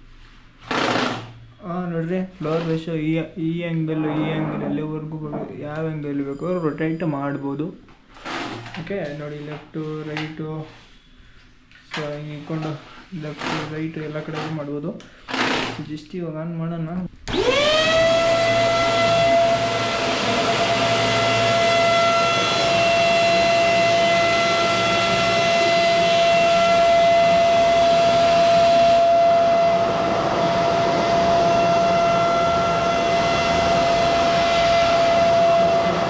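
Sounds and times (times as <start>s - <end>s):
vacuum cleaner motor whine: 17.3s - 36.0s.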